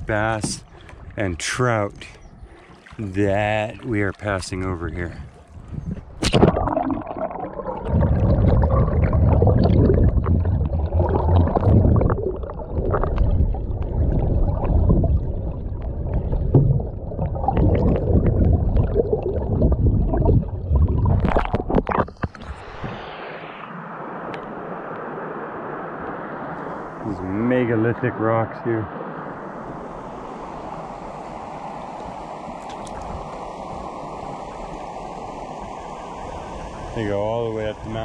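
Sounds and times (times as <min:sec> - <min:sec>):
underwater creek rumbling and gurgling: 0:00.0 - 0:38.0
soft steady hiss: 0:25.3 - 0:38.0.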